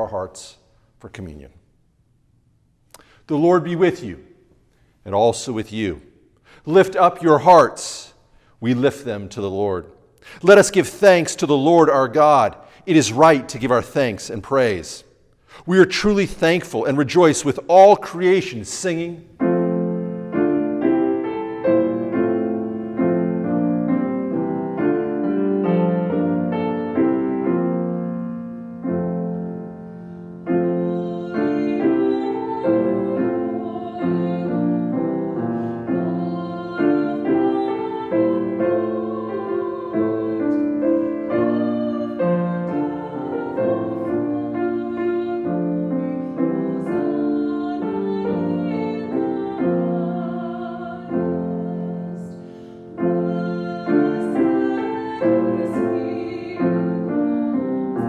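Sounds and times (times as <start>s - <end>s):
slow piano music: 16.2s - 58.0s.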